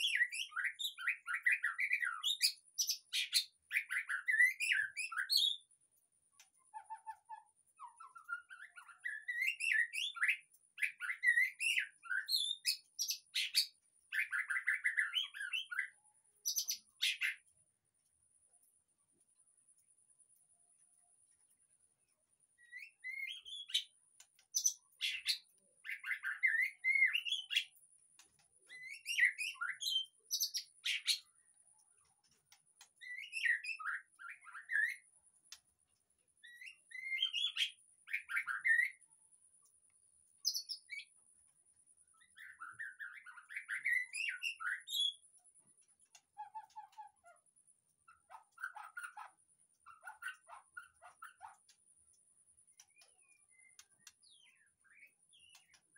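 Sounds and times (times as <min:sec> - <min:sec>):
bird singing whistled phrases: 0:00.0 - 0:05.7, 0:06.8 - 0:17.4, 0:22.6 - 0:23.9, 0:24.6 - 0:27.7, 0:28.7 - 0:31.2, 0:33.0 - 0:35.0, 0:36.4 - 0:39.0, 0:42.2 - 0:45.2.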